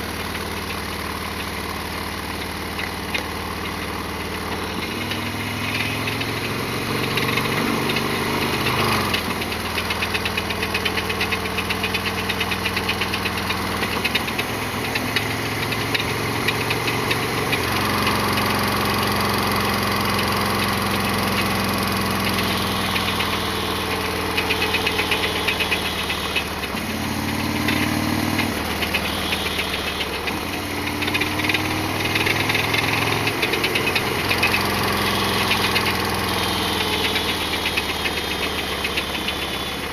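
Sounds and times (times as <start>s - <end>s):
motorcycle engine revving: 0.0s - 39.9s
rapid mechanical clatter: 0.0s - 39.9s.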